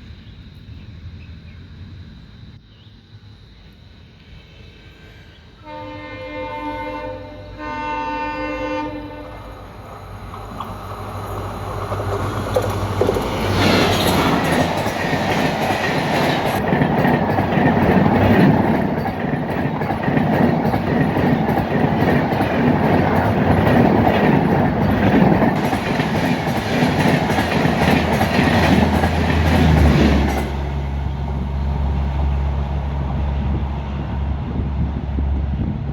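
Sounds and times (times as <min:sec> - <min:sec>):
train passing at speed: 0:04.0 - 0:35.9
wheels clacking over rail joints: 0:09.8 - 0:31.5.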